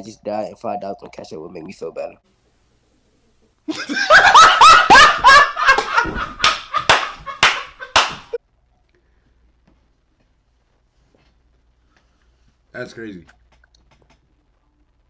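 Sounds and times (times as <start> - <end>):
person laughing hard: 3.7 - 8.4.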